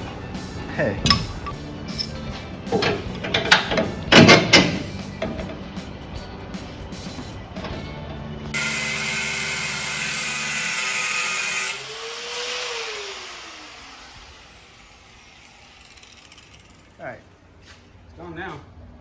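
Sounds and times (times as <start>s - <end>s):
grinder cutting metal: 8.5s - 17.0s
grinder motor winding down: 8.5s - 17.0s.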